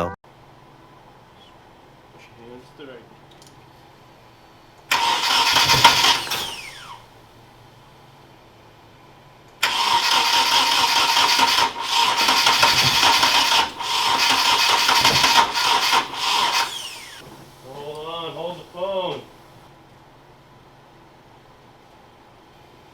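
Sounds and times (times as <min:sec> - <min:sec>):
engine cranking on starter: 0:04.9 - 0:07.2, 0:09.6 - 0:19.3.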